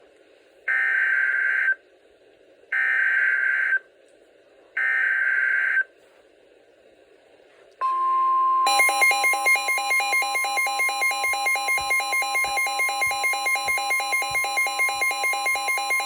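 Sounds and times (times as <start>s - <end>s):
steady alert tone: 7.9s - 16.0s
digital data tone bursts: 8.7s - 16.0s.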